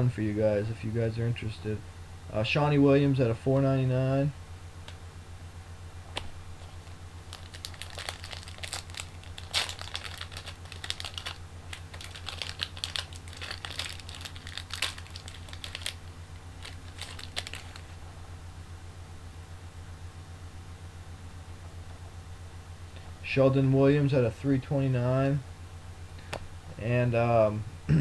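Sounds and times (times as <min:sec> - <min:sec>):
steady low hum: 0:00.0 - 0:28.0
cards and plastic packaging crinkling: 0:06.6 - 0:18.0.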